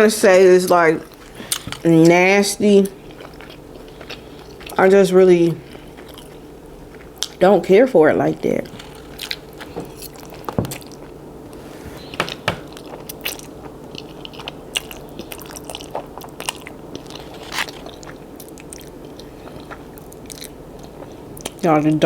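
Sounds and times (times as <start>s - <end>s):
faint steady hum: 0.0s - 22.0s
person chewing food: 1.0s - 2.1s, 2.8s - 4.8s, 5.4s - 7.4s, 8.6s - 21.6s
wet mouth clicks and crunches: 13.2s - 20.6s.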